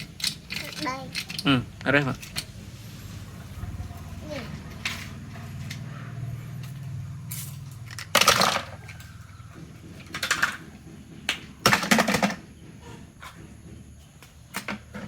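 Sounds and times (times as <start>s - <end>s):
small hard objects clattering: 7.3s - 9.2s.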